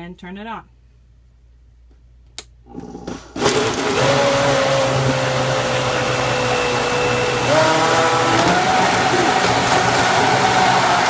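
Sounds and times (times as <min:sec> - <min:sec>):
blender motor blending ice: 0:03.4 - 0:11.0.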